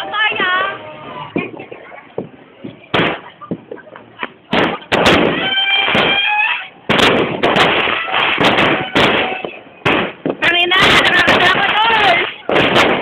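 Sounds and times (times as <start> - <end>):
firework bangs: 2.2 - 3.7, 4.5 - 13.0
firecrackers crackling: 2.2 - 13.0
firework whistling: 4.5 - 13.0.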